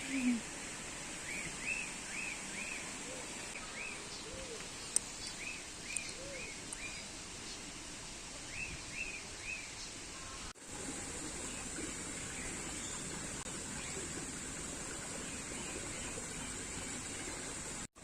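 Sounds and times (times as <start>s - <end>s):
steady high hiss: 0.0s - 18.0s
birds chirping: 10.9s - 17.9s.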